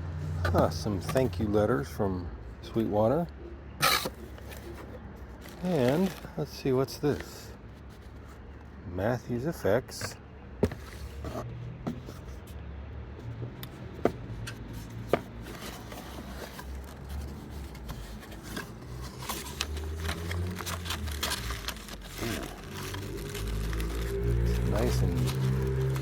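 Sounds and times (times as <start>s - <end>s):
packaging scraping and rustling: 3.8s - 8.5s, 14.1s - 26.0s.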